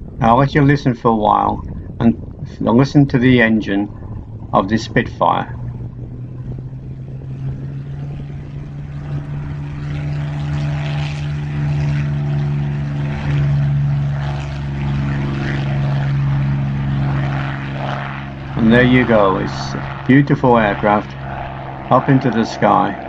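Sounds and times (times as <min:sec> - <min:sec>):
propeller plane engine drone: 0:00.0 - 0:23.0.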